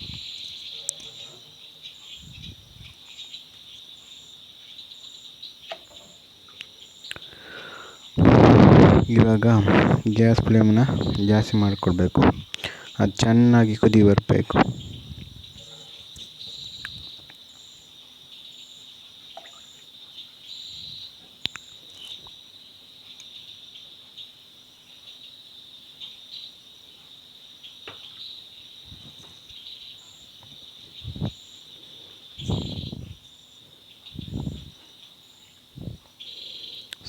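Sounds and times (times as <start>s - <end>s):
insects trilling: 0.0s - 37.0s
pulsing chirp: 7.7s - 17.2s, 30.8s - 31.6s, 32.3s - 33.3s, 34.1s - 34.8s.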